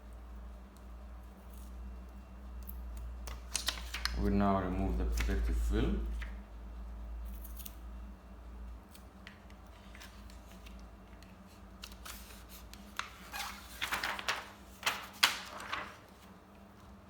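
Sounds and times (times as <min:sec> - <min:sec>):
plastic film crinkling and crackling: 0:11.8 - 0:16.3.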